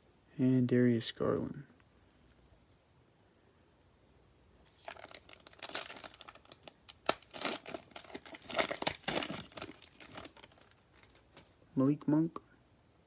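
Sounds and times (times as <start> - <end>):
wrapper tearing and crinkling: 4.6 - 11.5.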